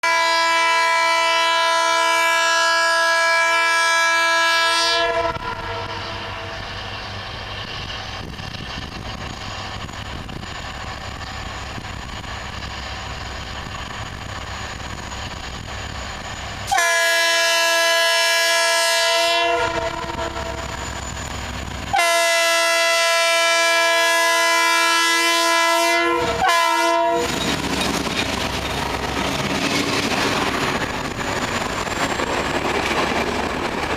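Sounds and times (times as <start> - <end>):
locomotive air horn blasts: 0.0 - 6.5, 16.7 - 20.6, 21.9 - 27.4.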